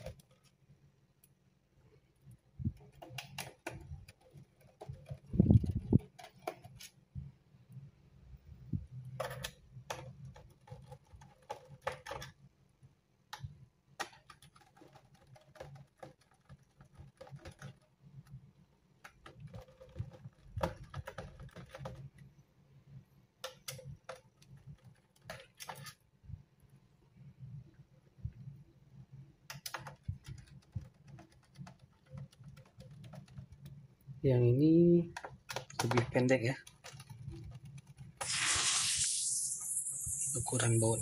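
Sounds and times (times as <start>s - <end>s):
screws knocking on plastic case: 19.1s - 22.1s.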